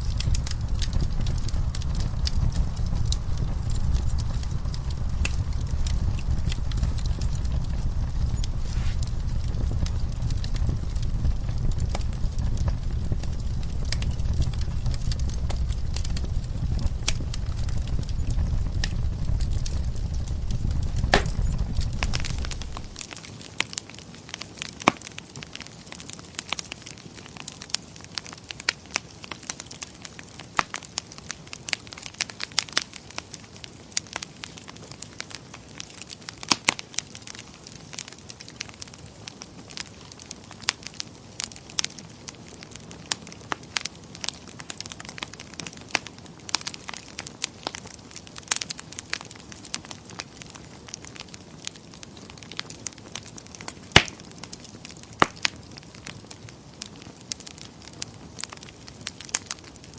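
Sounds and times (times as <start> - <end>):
low rumble: 0.0 - 23.0
wood fire crackling and popping: 0.0 - 59.9.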